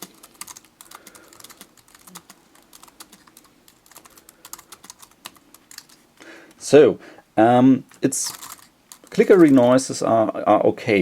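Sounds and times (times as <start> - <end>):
keyboard typing clicks: 0.0 - 5.9.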